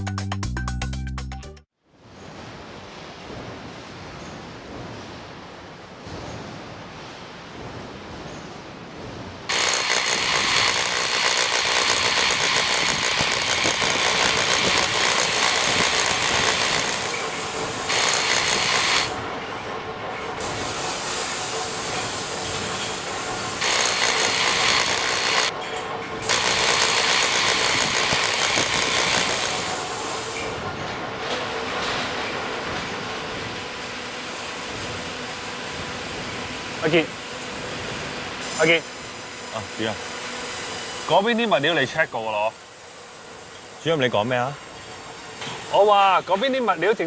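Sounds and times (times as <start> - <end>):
power tools on concrete: 9.5 - 19.2, 22.4 - 25.6, 26.2 - 30.6, 38.4 - 42.5
construction site din: 9.5 - 47.0.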